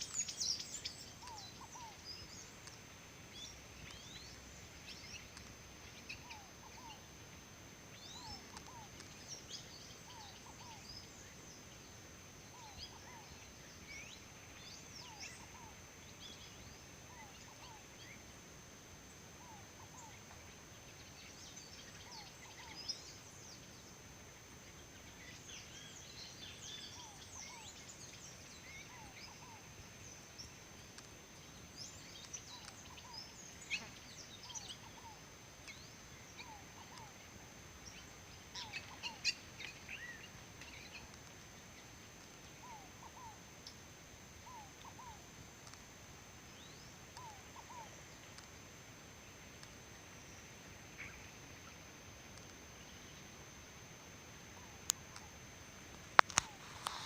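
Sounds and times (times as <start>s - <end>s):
small birds chirping: 0.0s - 57.0s.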